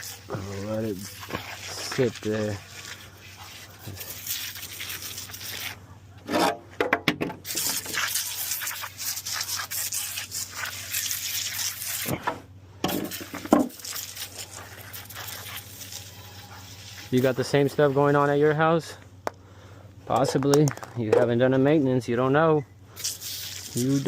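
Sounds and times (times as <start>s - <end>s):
foam fizzing and crackling: 0.0s - 5.8s, 7.4s - 12.2s, 13.0s - 17.7s.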